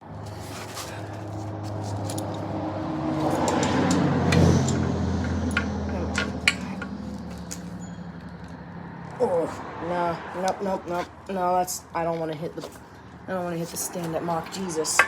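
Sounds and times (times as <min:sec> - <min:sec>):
metal hand tools clinking: 0:01.7 - 0:02.5.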